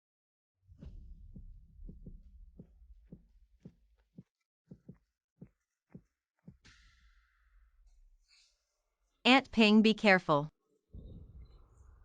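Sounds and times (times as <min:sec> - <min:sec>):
soft footsteps: 0:01.9 - 0:06.6.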